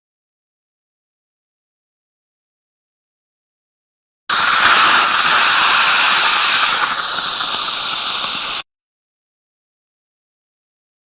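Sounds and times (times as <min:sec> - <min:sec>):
suction hissing: 0:04.3 - 0:08.6.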